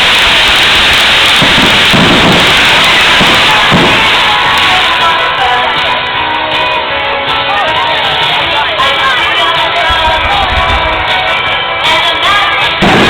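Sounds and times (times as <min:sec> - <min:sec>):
low fireworks booms: 0:00.0 - 0:06.2, 0:09.7 - 0:11.6, 0:12.7 - 0:13.0
fireworks crackling: 0:00.0 - 0:13.0
loud music: 0:00.0 - 0:13.0.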